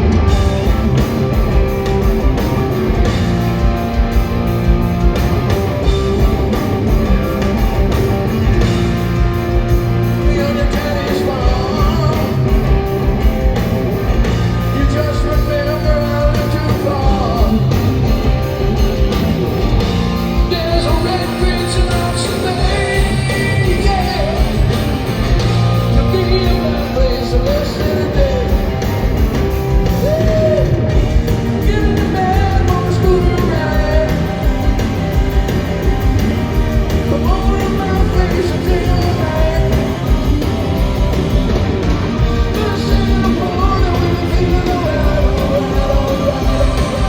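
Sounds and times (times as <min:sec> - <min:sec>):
bass guitar: 0:00.0 - 0:47.0
drums: 0:00.0 - 0:47.0
electric guitar: 0:00.0 - 0:47.0
live rock band playing: 0:00.0 - 0:47.0
man singing lead vocals: 0:09.9 - 0:13.2, 0:14.2 - 0:18.3, 0:20.2 - 0:29.2, 0:29.9 - 0:34.8, 0:37.0 - 0:40.5, 0:42.2 - 0:47.0.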